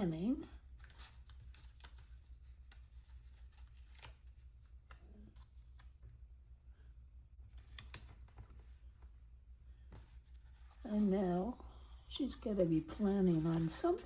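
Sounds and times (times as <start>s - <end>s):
paper stickers rustling: 0.7s - 6.1s, 12.9s - 14.0s.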